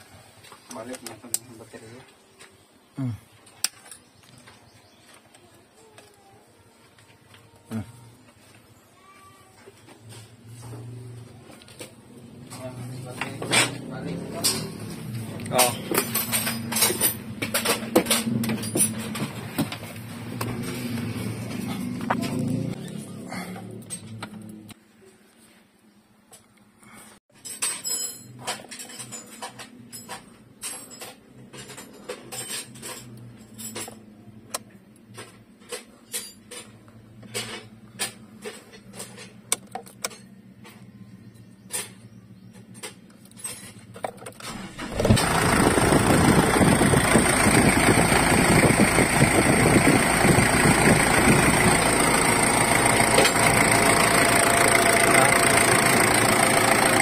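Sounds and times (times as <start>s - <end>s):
diesel engine starting and idling: 44.4s - 57.0s.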